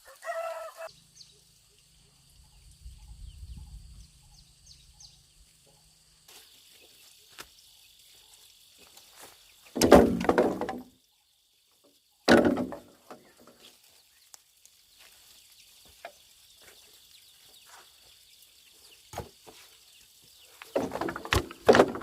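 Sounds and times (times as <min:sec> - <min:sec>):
faint high insect hum: 0:00.0 - 0:22.0
loud wooden clatters: 0:09.7 - 0:10.9, 0:12.3 - 0:13.3, 0:20.7 - 0:22.0.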